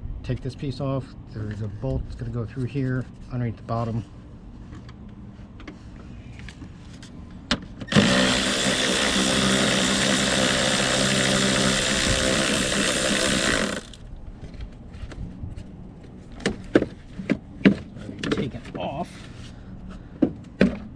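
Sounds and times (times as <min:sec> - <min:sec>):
power tool running: 0:07.9 - 0:14.0.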